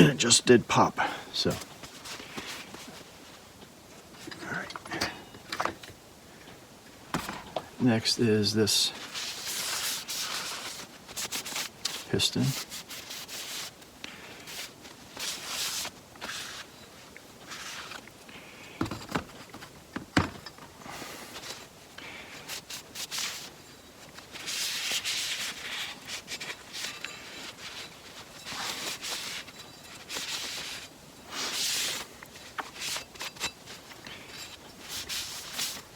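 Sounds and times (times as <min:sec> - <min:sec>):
hands rubbing and rustling: 0:01.4 - 0:04.4, 0:08.9 - 0:18.4, 0:21.0 - 0:35.9.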